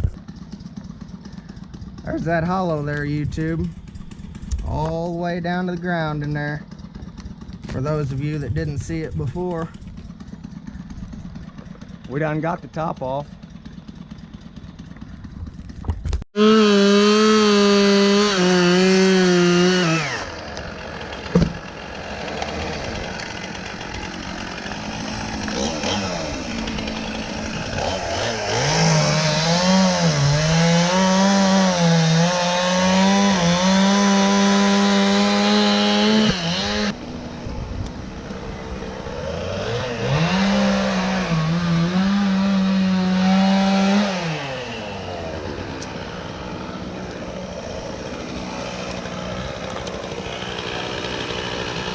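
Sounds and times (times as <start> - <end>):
chainsaw cutting wood: 0.0 - 51.9.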